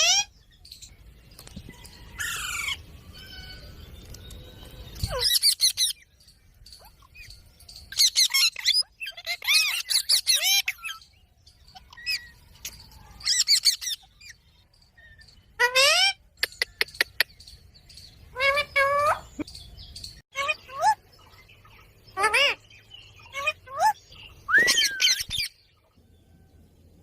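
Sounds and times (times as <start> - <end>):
parakeet calling: 7.9 - 12.4, 18.2 - 25.6.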